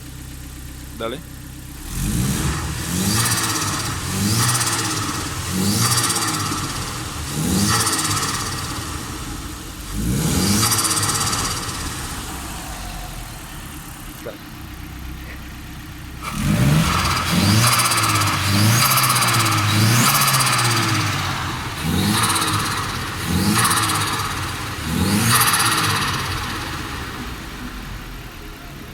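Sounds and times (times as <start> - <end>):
engine revving: 1.0 - 28.9.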